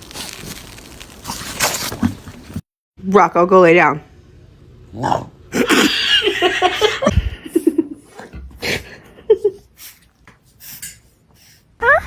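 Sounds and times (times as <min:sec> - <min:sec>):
person laughing: 0:05.5 - 0:08.0.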